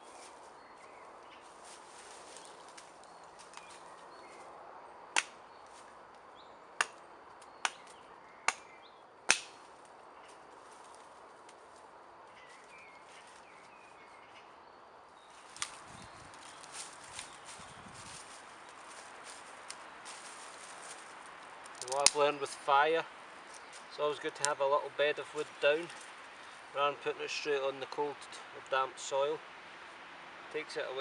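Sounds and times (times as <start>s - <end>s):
sharp cracks: 5.1s - 5.4s, 7.6s - 9.9s, 21.6s - 22.3s.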